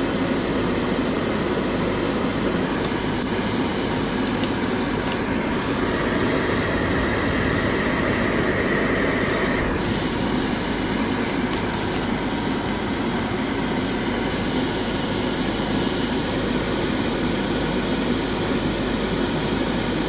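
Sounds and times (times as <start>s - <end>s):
faint high whine: 2.4s - 14.8s
machinery rumbling: 2.5s - 14.4s.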